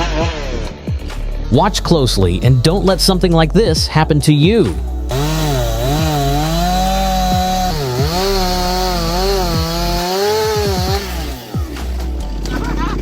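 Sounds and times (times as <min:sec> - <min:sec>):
chainsaw cutting wood: 0:05.0 - 0:12.5.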